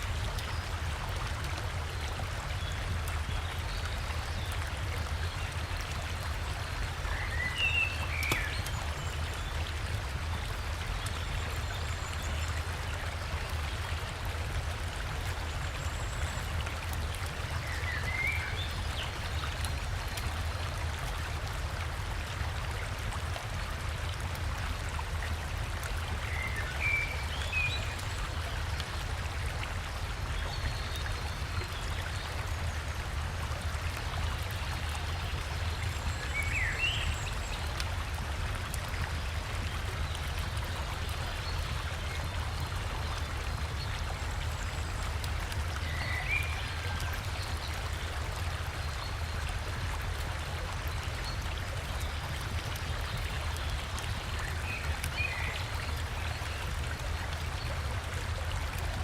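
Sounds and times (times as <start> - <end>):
river water flowing: 0.0 - 59.0.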